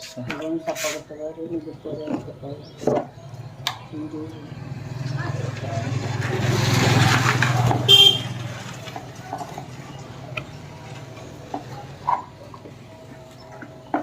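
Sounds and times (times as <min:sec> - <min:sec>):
motor vehicle passing by: 0:03.2 - 0:13.9
car horn toot: 0:07.8 - 0:08.5.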